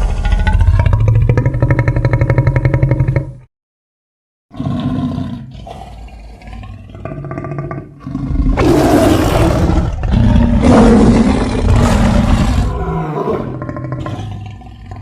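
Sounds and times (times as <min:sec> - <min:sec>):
big cat roaring: 0:04.5 - 0:15.0
low weak growl: 0:10.9 - 0:15.0.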